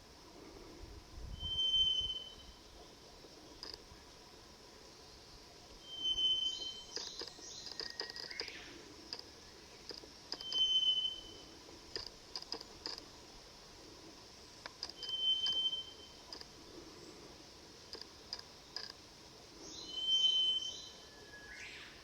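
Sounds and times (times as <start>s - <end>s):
high whistled bird call: 1.4s - 2.6s, 5.8s - 7.2s, 10.4s - 11.4s, 15.0s - 16.2s, 19.7s - 21.9s
faint high chirps: 5.8s - 8.7s, 10.3s - 11.6s, 14.8s - 16.4s.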